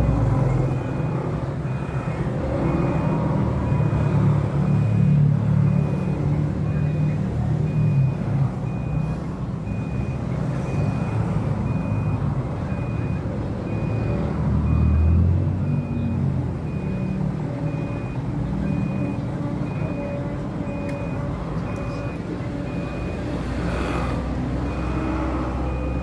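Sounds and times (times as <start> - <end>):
low engine rumble: 0.0 - 2.7
vehicle reversing beeper: 0.0 - 26.0.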